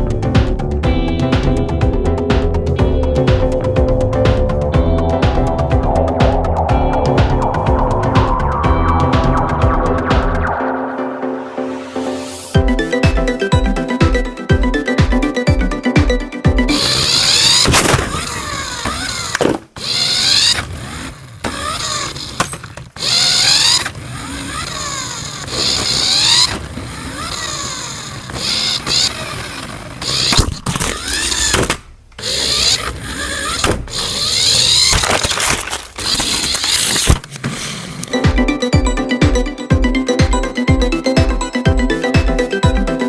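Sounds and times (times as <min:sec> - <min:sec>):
toy car electric motor whirring: 0:16.7 - 0:38.1.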